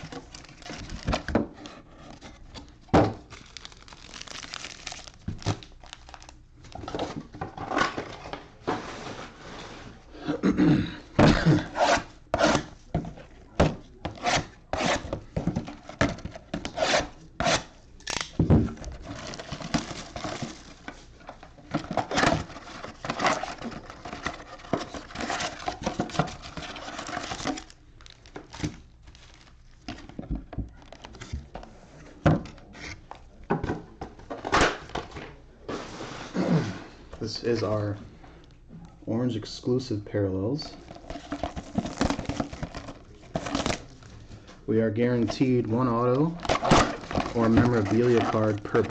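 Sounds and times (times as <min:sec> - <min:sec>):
cardboard rubbing and scraping: 0:14.1 - 0:15.2.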